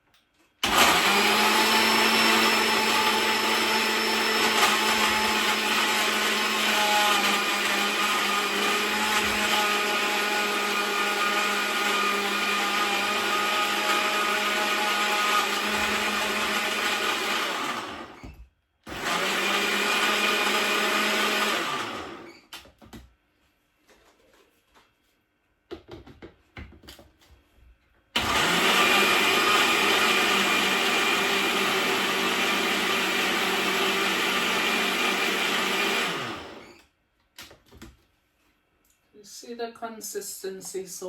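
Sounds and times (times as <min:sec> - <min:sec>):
electric blender running: 0:00.6 - 0:22.4, 0:28.2 - 0:36.8.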